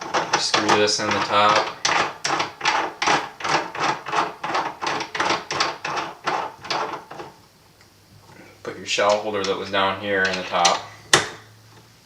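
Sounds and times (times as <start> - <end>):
metal threads rasping: 0.0 - 7.3.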